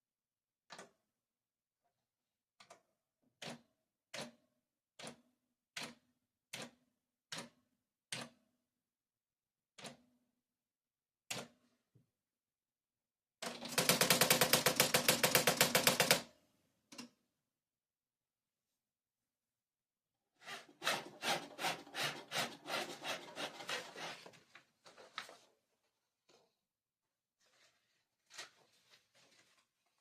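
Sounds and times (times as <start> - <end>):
electric typewriter keys striking: 13.5 - 16.2.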